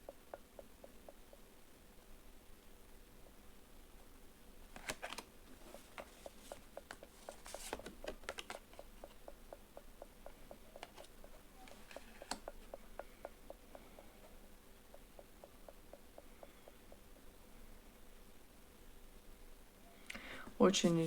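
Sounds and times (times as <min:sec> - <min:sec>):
faint regular ticking: 0:00.0 - 0:03.5, 0:05.6 - 0:17.5
tarot cards being handled: 0:04.7 - 0:09.4, 0:10.0 - 0:13.1.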